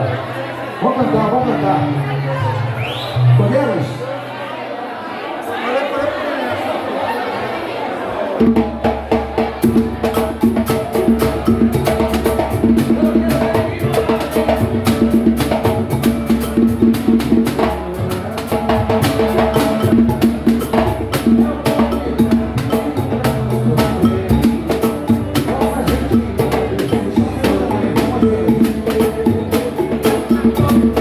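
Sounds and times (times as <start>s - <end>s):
fast hand percussion: 8.4s - 31.0s
samba band playing: 8.4s - 31.0s.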